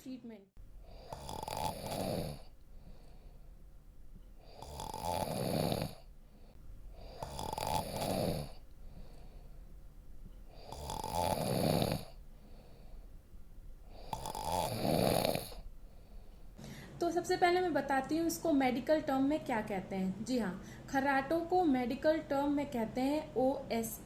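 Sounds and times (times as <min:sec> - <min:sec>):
quiet breaths: 0:00.6 - 0:17.0, 0:20.6 - 0:21.0
person snoring: 0:00.8 - 0:03.0, 0:04.4 - 0:06.1, 0:06.9 - 0:09.3, 0:10.5 - 0:12.8, 0:13.9 - 0:15.7.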